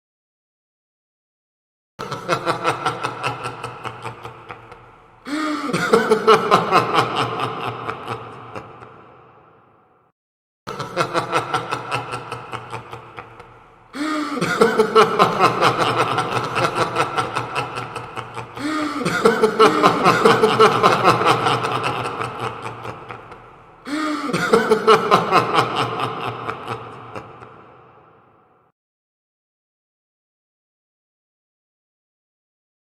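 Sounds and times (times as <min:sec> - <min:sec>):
evil laugh: 0:02.0 - 0:09.8, 0:10.7 - 0:28.6.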